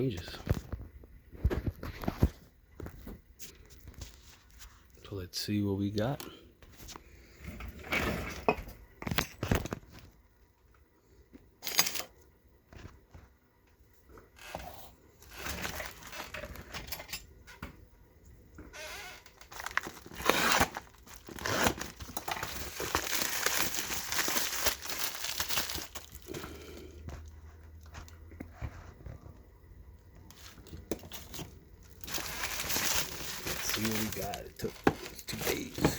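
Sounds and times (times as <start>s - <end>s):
tape tearing: 11.6s - 12.1s, 18.8s - 26.3s, 30.9s - 35.9s
packing material crinkling: 11.6s - 12.2s, 15.2s - 16.7s, 18.8s - 28.1s, 30.3s - 35.9s.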